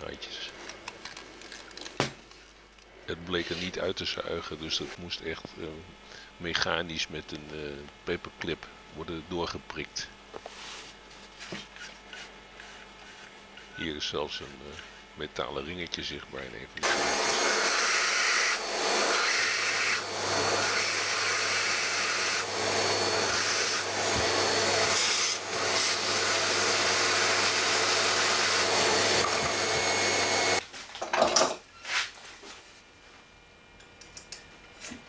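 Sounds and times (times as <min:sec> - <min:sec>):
knocks and handling sounds: 0:00.5 - 0:02.8
vacuum cleaner running: 0:16.8 - 0:30.6.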